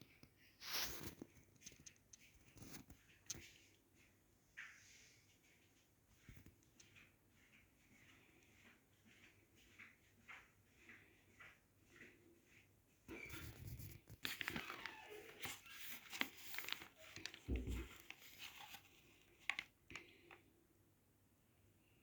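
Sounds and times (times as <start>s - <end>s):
paper cup rustling and crinkling: 13.1s - 20.4s.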